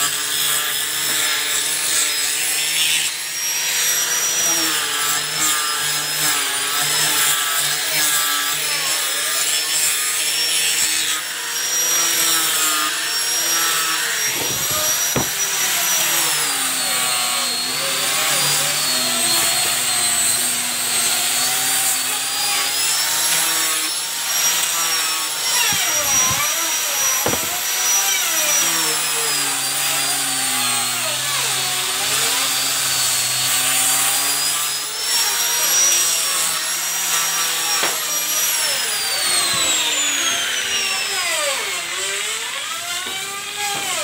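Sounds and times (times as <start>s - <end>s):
sanding disc rubbing wood: 9.9s - 29.8s
grinder motor whine: 10.1s - 30.5s, 34.2s - 44.0s.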